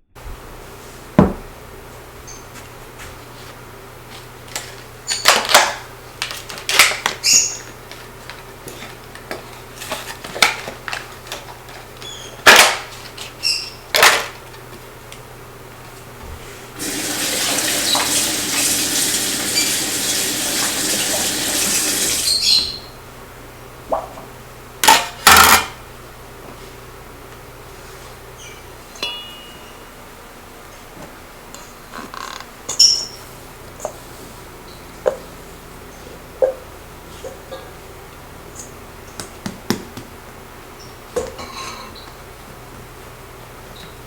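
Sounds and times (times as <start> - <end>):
water tap running: 16.8 - 22.6
dishes and utensils clinking: 41.2 - 42.1.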